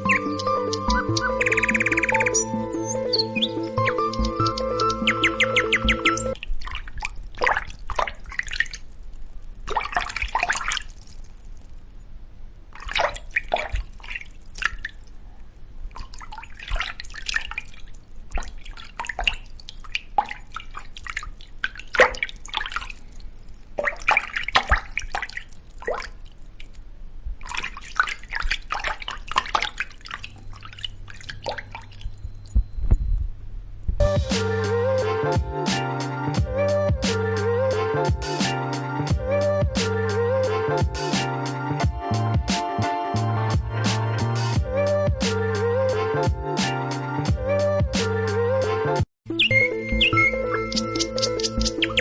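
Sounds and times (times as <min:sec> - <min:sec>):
water dripping and splashing: 0:09.6 - 0:11.6, 0:16.0 - 0:26.4, 0:27.4 - 0:32.1.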